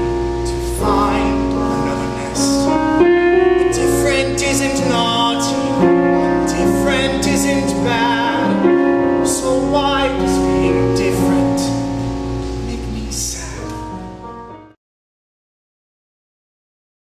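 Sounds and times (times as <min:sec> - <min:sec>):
people singing with vibrato: 0:00.0 - 0:02.6, 0:03.4 - 0:12.0
piano accompaniment: 0:00.0 - 0:14.8.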